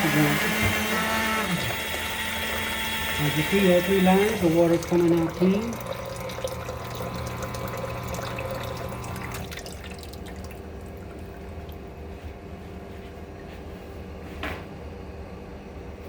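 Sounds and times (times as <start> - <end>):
water streaming into a pitcher: 0.0 - 11.9
coffee machine hum: 0.0 - 16.0.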